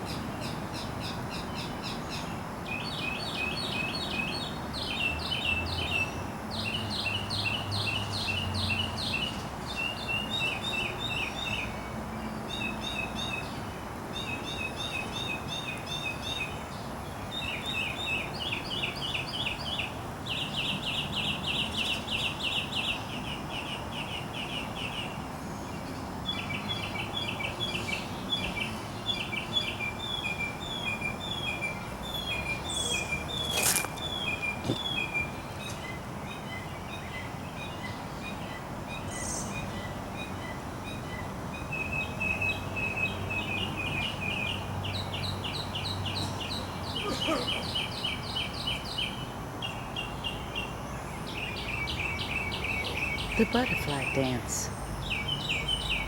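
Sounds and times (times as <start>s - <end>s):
outdoor noise haze: 0.0s - 56.0s
songbirds trilling: 0.0s - 56.0s.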